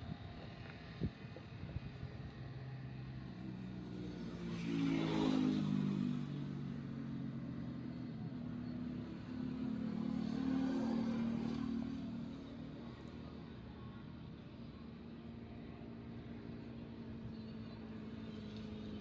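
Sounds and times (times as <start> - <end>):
vehicle engines passing: 0.0 - 14.8.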